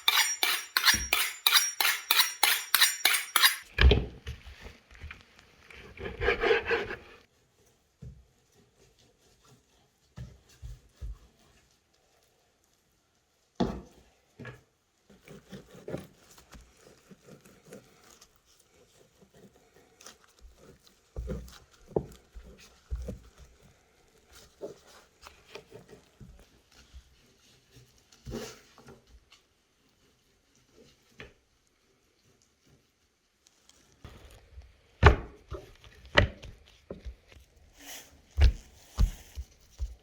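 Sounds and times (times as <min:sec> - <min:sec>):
scraping rub: 0:00.0 - 0:03.7, 0:05.8 - 0:07.3.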